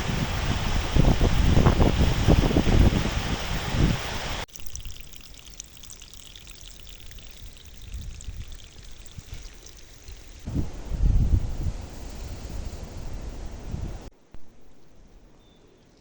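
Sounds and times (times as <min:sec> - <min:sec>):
wind buffeting the microphone: 0:00.0 - 0:04.4, 0:07.2 - 0:14.1
trickle of running water: 0:00.0 - 0:10.7.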